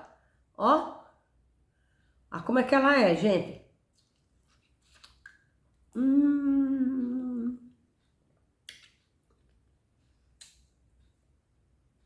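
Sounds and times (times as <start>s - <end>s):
woman humming mmm: 5.9s - 7.8s.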